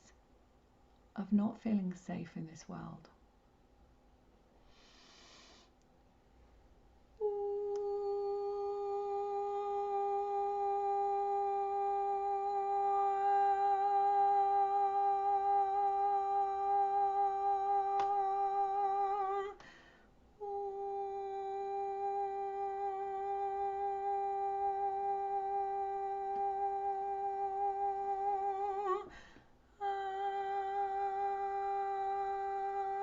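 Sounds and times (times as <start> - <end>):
woman breathing: 4.6 - 5.8, 19.6 - 20.2, 29.0 - 29.7
woman humming a long note: 7.2 - 19.6, 20.4 - 29.2, 29.8 - 33.0.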